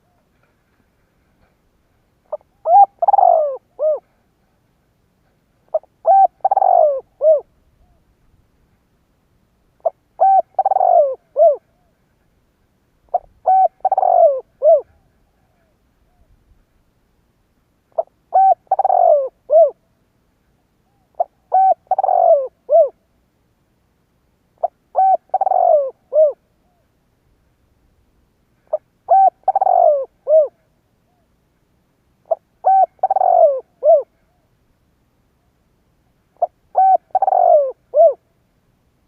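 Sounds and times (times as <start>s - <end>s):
dove cooing: 2.3s - 4.2s, 5.7s - 8.0s, 9.8s - 12.0s, 13.1s - 16.3s, 17.9s - 19.8s, 20.9s - 23.0s, 24.6s - 26.8s, 28.6s - 31.3s, 32.2s - 34.4s, 36.4s - 38.3s.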